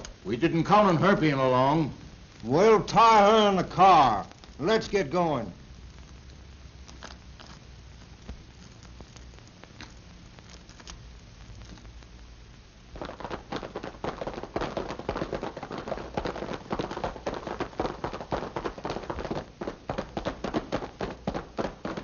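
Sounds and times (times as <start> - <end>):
horse hoofbeats galloping: 13.0 - 22.0.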